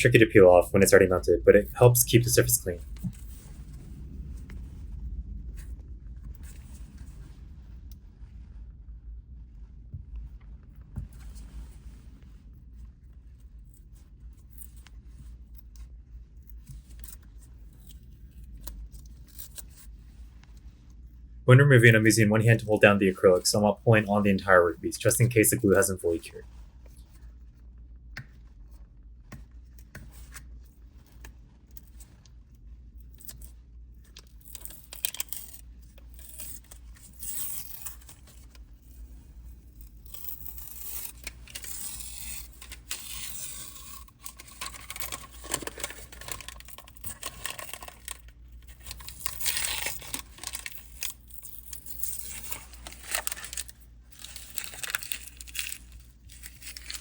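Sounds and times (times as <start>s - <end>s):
paper masking peeled off plastic: 21.8s - 26.3s, 34.1s - 57.0s.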